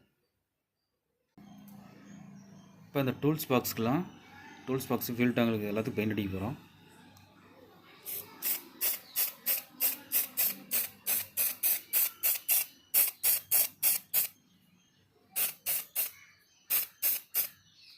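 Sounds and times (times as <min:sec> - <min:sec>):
spray paint hissing bursts: 0:08.1 - 0:14.4, 0:15.4 - 0:17.6.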